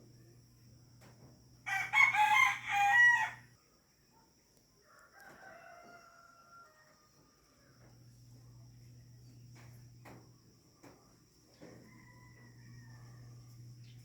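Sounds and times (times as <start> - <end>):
rooster crowing: 1.6 - 3.5, 4.8 - 8.0, 11.5 - 14.0.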